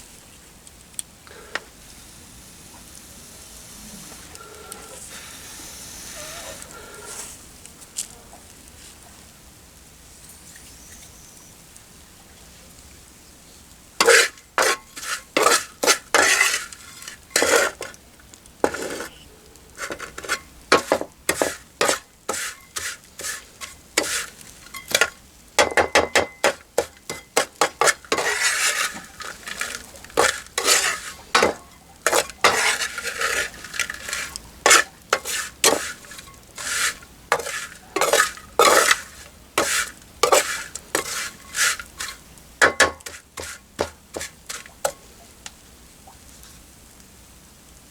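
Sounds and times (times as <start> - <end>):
utensil clinking and scraping cookware: 14.0 - 18.0, 18.6 - 19.2, 19.8 - 45.1.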